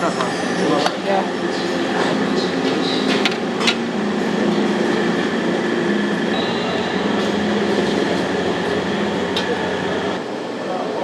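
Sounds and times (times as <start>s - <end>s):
gas burner roaring: 0.0s - 10.5s.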